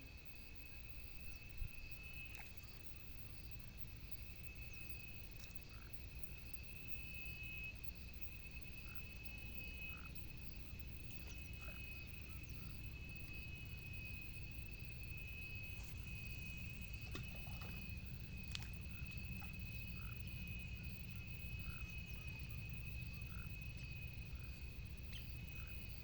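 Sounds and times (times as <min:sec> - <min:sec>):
frogs trilling: 0:00.2 - 0:26.0
low frog croaks: 0:09.7 - 0:13.5, 0:14.7 - 0:26.0.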